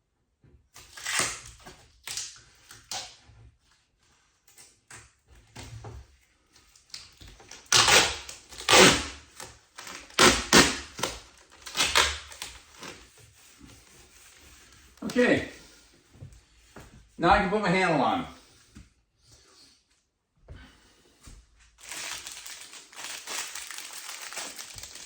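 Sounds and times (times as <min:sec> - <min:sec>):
plastic film peeled and crinkled: 0:06.6 - 0:15.5, 0:21.8 - 0:25.0.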